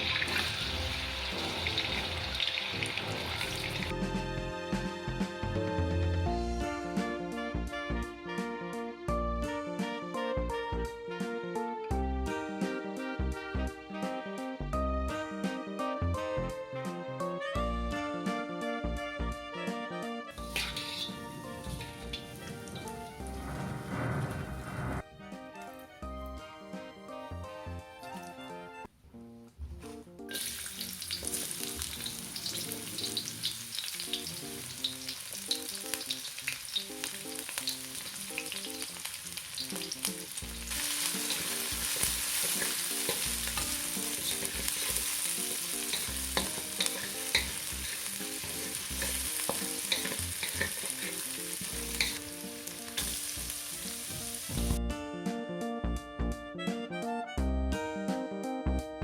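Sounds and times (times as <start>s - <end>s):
food sizzling in oil: 0.0s - 4.0s, 20.4s - 23.9s, 30.3s - 54.8s.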